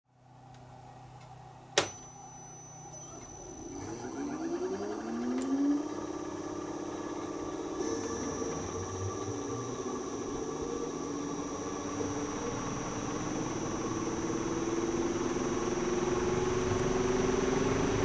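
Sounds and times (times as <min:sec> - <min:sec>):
sharp relay click: 0:00.6 - 0:02.3.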